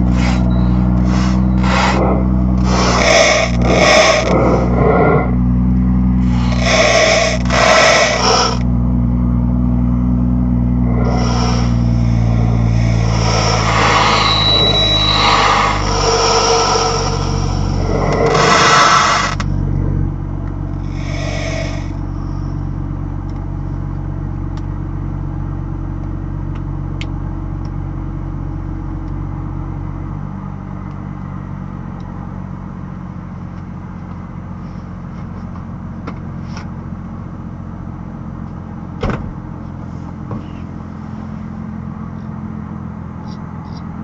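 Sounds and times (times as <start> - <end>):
tire screech: 0.0 - 20.0, 20.6 - 23.0, 39.4 - 44.0
car engine hum in cabin: 0.0 - 44.0.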